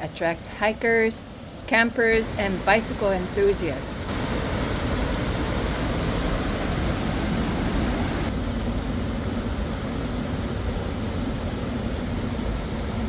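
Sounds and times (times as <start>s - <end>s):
fast-flowing water rushing: 1.2s - 8.3s.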